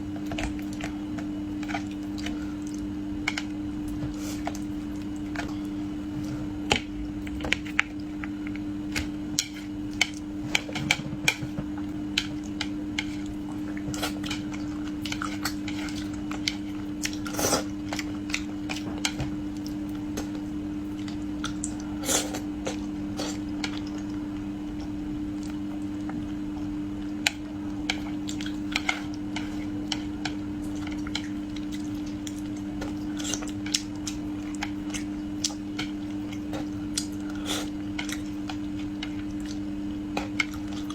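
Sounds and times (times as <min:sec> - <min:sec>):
steady low hum: 0:00.0 - 0:40.9
person chewing: 0:12.1 - 0:20.3, 0:20.9 - 0:24.2, 0:24.8 - 0:40.9.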